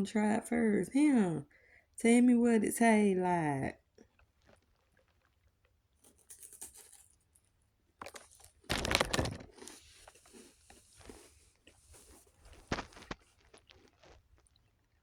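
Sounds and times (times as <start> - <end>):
crunching and chewing cracker: 3.9 - 15.0.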